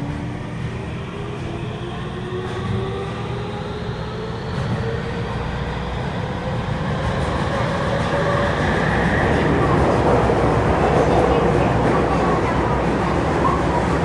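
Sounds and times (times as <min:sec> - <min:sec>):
wheels rumbling on rail: 0:00.0 - 0:14.0.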